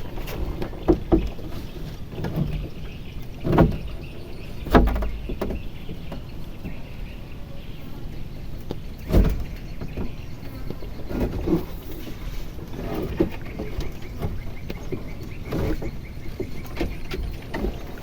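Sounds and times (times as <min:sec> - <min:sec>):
knocks in wooden boat: 0:00.2 - 0:06.9, 0:08.7 - 0:11.7.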